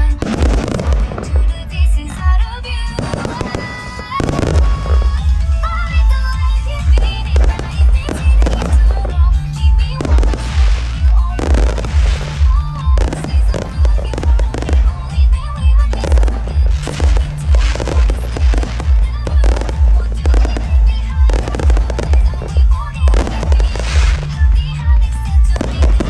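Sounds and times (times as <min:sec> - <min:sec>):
fireworks bursting and crackling: 0:00.0 - 0:26.0
music with heavy bass beat: 0:04.2 - 0:26.0.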